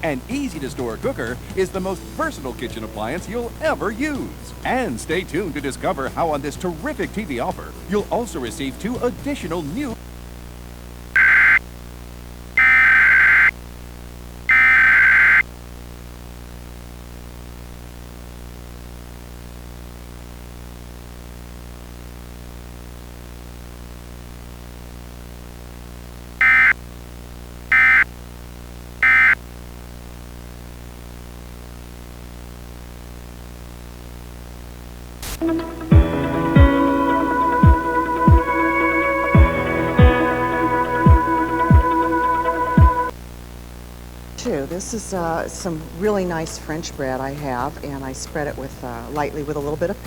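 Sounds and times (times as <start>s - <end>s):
steady low hum: 0.0s - 11.2s
rasping digital data bursts: 11.2s - 11.6s, 12.6s - 13.5s.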